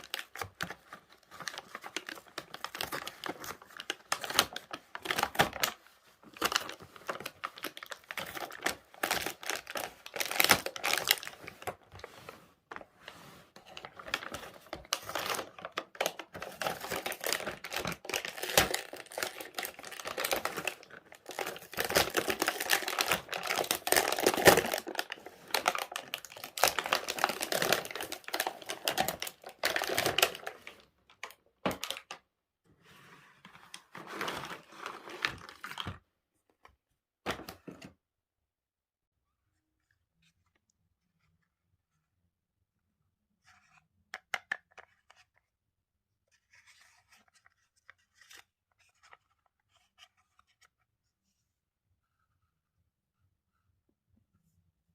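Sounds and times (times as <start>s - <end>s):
plastic packaging crinkling: 0.0s - 11.8s, 13.7s - 30.8s.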